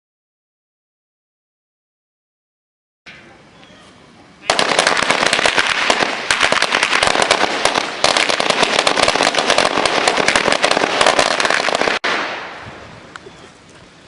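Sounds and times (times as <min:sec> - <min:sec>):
fireworks cracking: 0:04.4 - 0:13.2.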